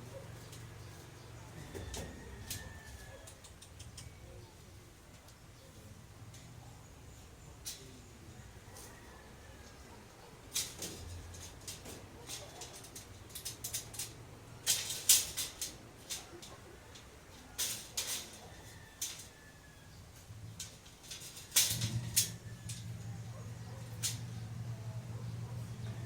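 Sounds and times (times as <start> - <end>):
metal bars clinking: 9.6 - 26.0
steady low hum: 19.9 - 26.0.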